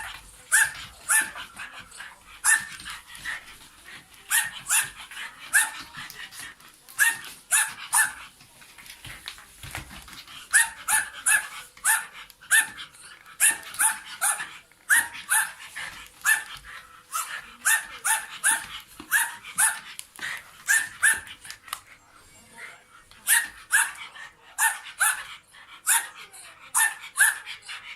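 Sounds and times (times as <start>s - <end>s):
dog barking: 2.4s - 2.8s, 4.3s - 5.8s, 10.5s - 12.8s, 16.2s - 16.5s, 17.1s - 19.9s, 20.7s - 21.3s, 23.2s - 24.0s, 24.6s - 25.2s, 25.8s - 27.5s.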